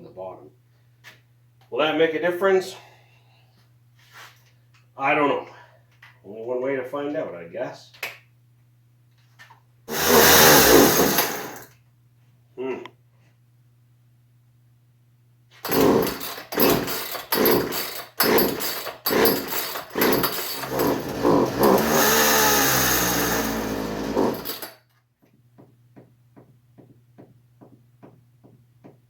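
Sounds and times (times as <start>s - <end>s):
chainsaw engine sputtering and running: 9.9s - 11.6s, 15.6s - 24.7s.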